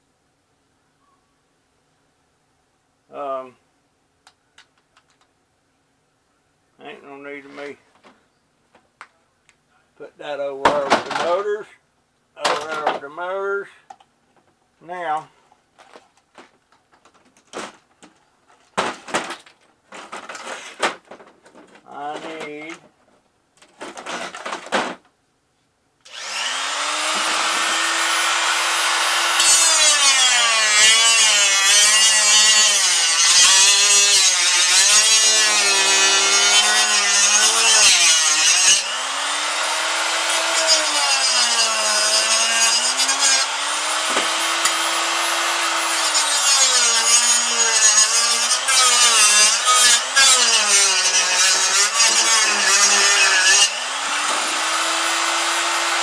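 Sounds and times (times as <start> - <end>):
cut-off tool motor whine: 26.1 - 30.0, 38.8 - 41.0, 43.0 - 46.0, 53.2 - 56.0.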